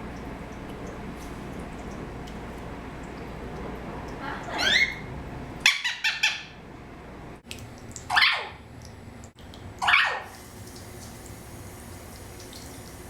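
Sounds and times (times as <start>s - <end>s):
parrot calling: 4.2s - 6.6s, 9.8s - 10.3s.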